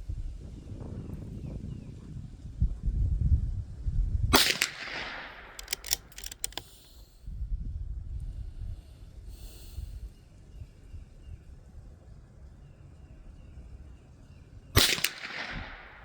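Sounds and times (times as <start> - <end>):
wind buffeting microphone: 0.0 - 6.6
rifle shot: 4.4 - 6.9, 14.8 - 16.0
rifle bolt clicks: 5.5 - 7.0.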